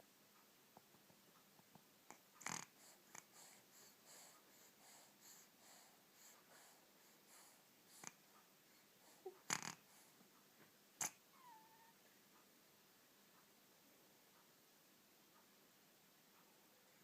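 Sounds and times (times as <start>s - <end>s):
faint snoring: 2.4s - 8.2s, 9.1s - 10.1s
soft quick breaths: 2.7s - 10.3s
short snort: 9.5s - 9.8s.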